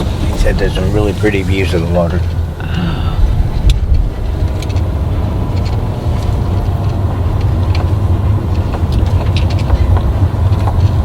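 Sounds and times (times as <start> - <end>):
engine and tyre rumble: 0.0 - 11.0
small clicks and rattles: 3.5 - 11.0.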